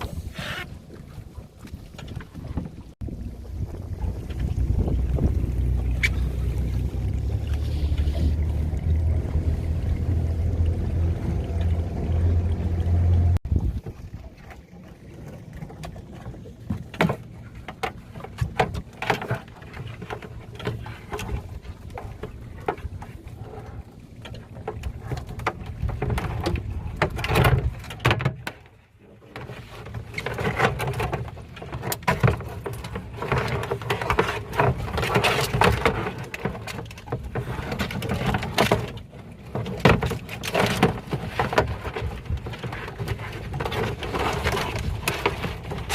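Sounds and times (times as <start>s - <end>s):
boat motor running: 3.0s - 13.7s.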